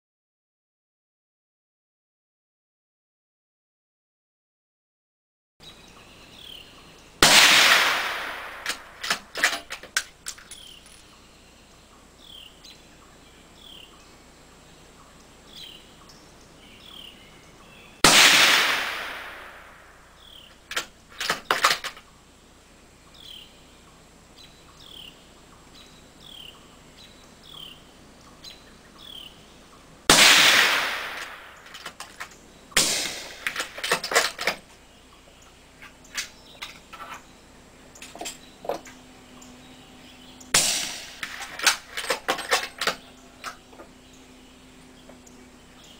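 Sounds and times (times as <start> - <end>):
birds chirping: 5.6 - 45.9
suppressed rifle shots: 7.2 - 10.1, 18.0 - 20.0, 30.1 - 34.6, 40.5 - 43.6.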